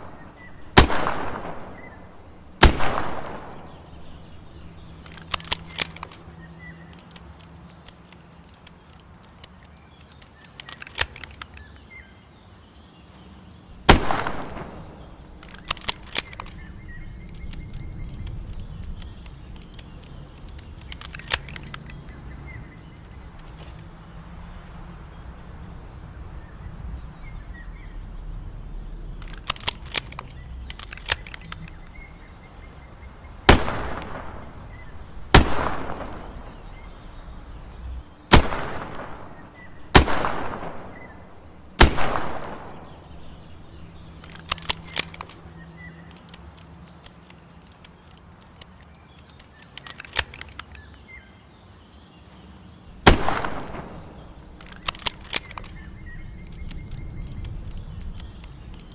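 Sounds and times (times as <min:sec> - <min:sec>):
revolver shots ringing out: 0:00.0 - 0:04.1, 0:13.8 - 0:15.4, 0:33.5 - 0:37.0, 0:38.3 - 0:43.4, 0:53.0 - 0:54.6
light metallic clicks: 0:00.0 - 0:12.1, 0:13.2 - 0:24.4, 0:27.1 - 0:51.2, 0:52.4 - 0:58.9.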